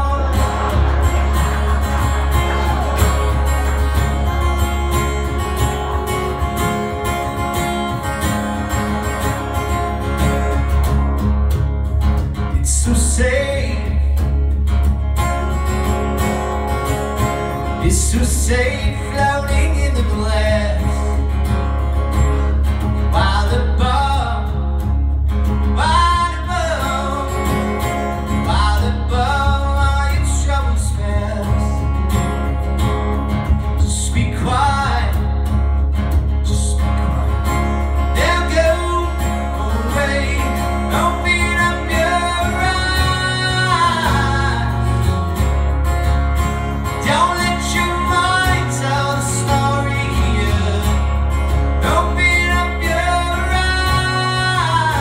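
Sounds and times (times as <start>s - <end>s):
person singing: 0.0s - 6.9s, 38.0s - 45.3s, 46.9s - 51.2s, 51.8s - 55.0s
acoustic guitar: 0.0s - 55.0s.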